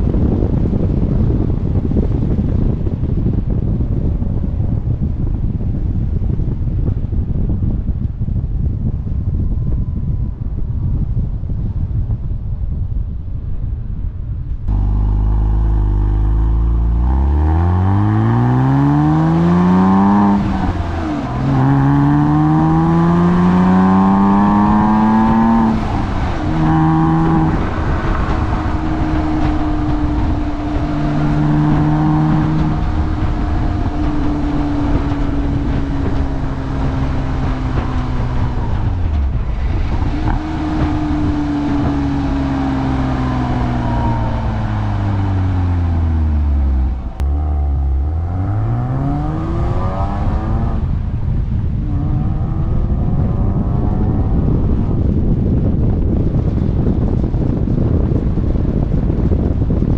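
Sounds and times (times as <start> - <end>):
car engine accelerating hard: 14.7 - 59.9.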